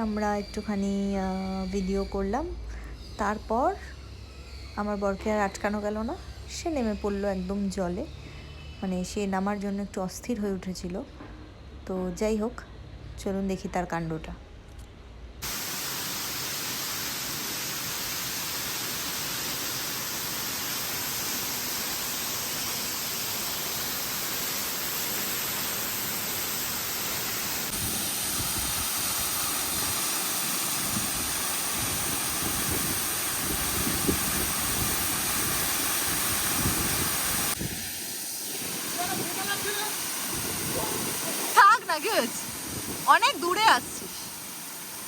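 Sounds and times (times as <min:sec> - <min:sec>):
waterfall rushing: 0:15.4 - 0:45.0.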